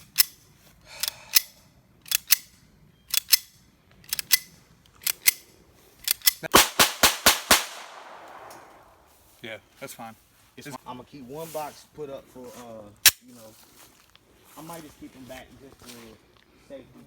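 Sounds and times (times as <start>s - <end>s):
gunshots: 6.5s - 9.0s.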